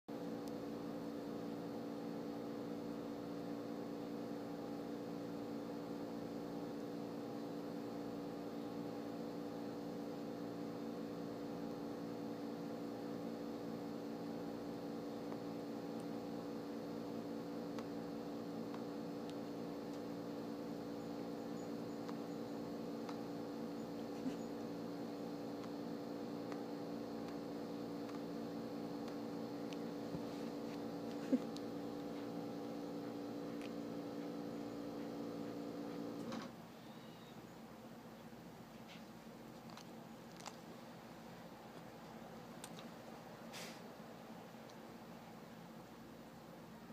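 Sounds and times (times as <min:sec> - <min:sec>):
electrical hum: 0:00.1 - 0:46.9.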